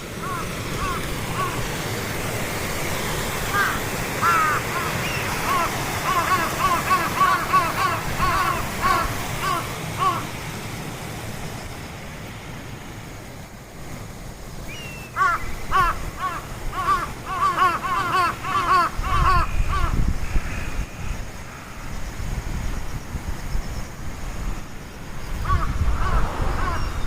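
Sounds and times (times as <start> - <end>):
birds giving harsh calls: 0.2 - 1.7, 3.4 - 10.5, 14.7 - 21.2, 25.4 - 27.0.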